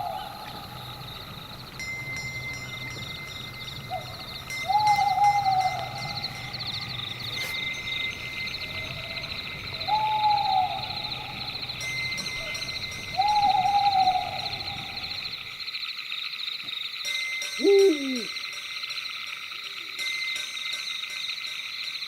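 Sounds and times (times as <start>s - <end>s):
owl hooting: 0.0s - 1.8s, 3.7s - 7.6s, 8.5s - 15.5s, 17.6s - 18.3s
night insects trilling: 0.0s - 22.0s.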